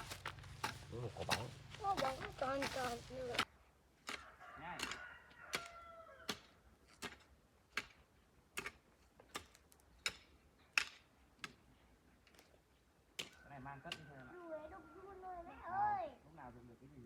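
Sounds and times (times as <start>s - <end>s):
sharp chopping strikes: 0.0s - 3.4s.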